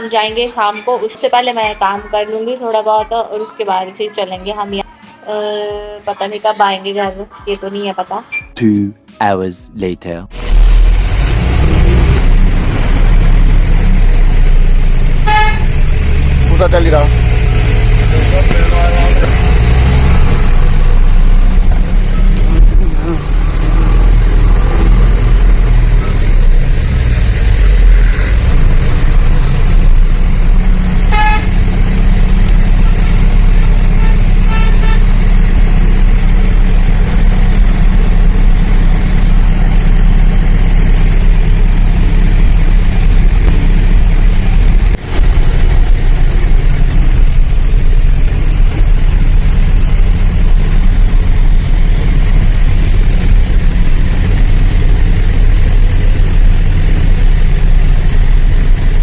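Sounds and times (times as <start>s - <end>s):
vehicle engine rumbling: 9.9s - 59.0s
vehicle horn: 15.1s - 16.0s, 30.8s - 32.0s, 32.6s - 35.3s.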